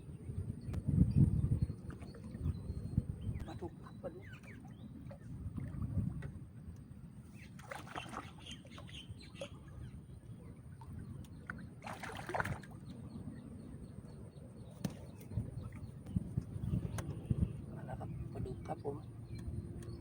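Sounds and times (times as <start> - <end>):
wind rumble on microphone: 0.0 - 7.7, 8.3 - 20.0
water splashing: 7.6 - 9.5, 10.8 - 12.8.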